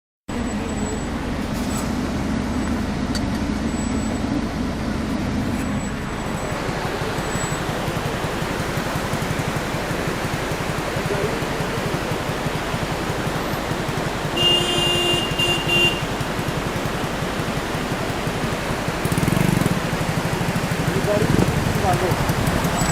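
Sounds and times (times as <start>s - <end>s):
vehicle engine running: 0.3s - 22.9s
car horn: 14.3s - 16.4s.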